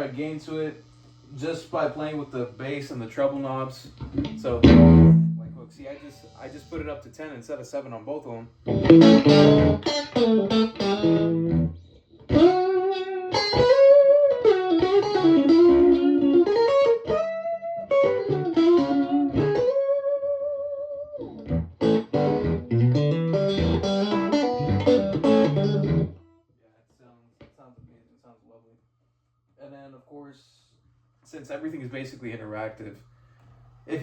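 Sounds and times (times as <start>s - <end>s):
electric guitar chords and lead: 4.1s - 5.6s, 8.6s - 26.2s.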